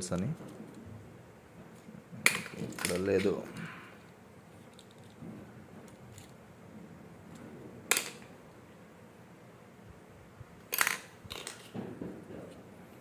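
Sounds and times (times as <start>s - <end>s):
plastic parts clicking: 2.2s - 5.2s, 5.8s - 6.4s, 10.7s - 11.7s
plastic parts clattering: 2.2s - 6.4s, 10.7s - 12.6s.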